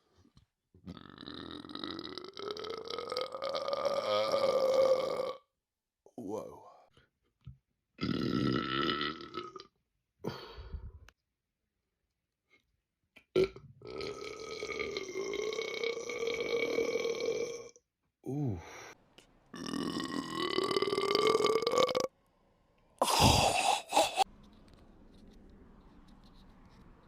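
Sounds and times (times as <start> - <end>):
men burping loudly: 0.9 - 5.4, 8.0 - 9.6, 19.6 - 22.1, 23.0 - 24.2.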